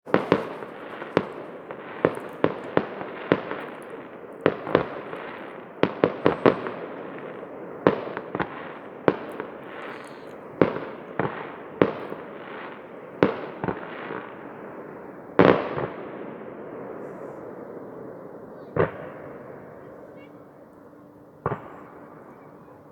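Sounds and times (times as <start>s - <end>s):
fireworks crackle: 0.0s - 18.0s
fireworks bangs: 0.0s - 20.4s, 21.4s - 22.9s.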